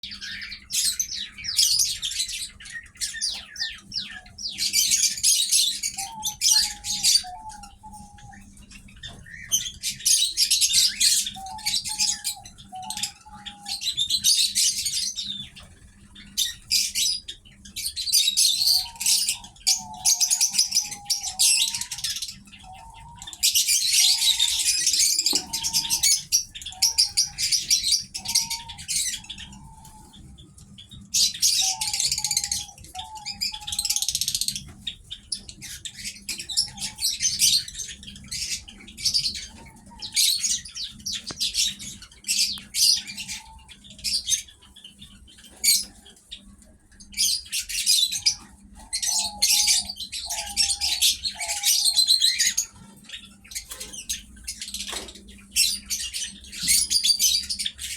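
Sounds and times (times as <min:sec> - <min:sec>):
birds chirping and twittering: 0:00.0 - 0:57.9.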